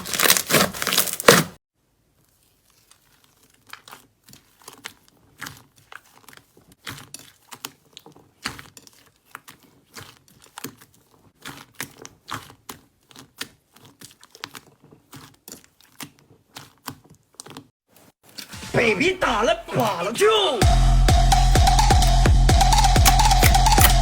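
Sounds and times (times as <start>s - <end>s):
slime crackling and popping: 0.0s - 1.6s.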